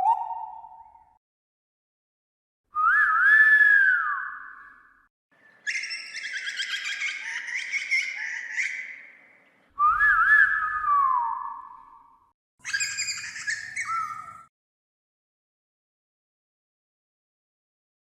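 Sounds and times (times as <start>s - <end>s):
bird whistling and warbling: 0.0s - 1.2s, 5.6s - 9.1s, 12.6s - 14.5s.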